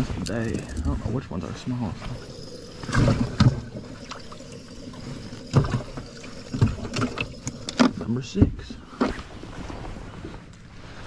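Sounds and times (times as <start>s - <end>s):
knocks and thumps on a boat: 6.6s - 10.4s.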